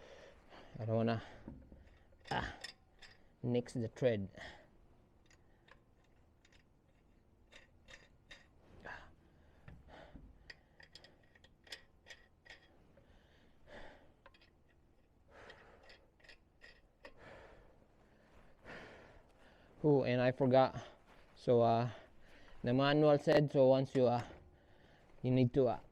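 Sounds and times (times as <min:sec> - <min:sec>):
soft breaths: 0:00.0 - 0:03.4, 0:04.3 - 0:06.6, 0:08.6 - 0:11.9, 0:12.5 - 0:23.0, 0:24.0 - 0:25.3
metallic clicks of lug nuts: 0:01.4 - 0:03.4, 0:05.2 - 0:08.6, 0:09.7 - 0:13.1, 0:14.2 - 0:17.2.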